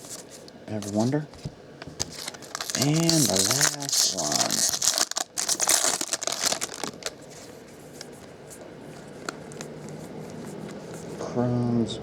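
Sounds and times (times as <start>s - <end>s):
cards rustling and clicking: 0.0s - 1.2s, 1.8s - 8.2s
card pack wrapper tearing: 2.0s - 7.4s.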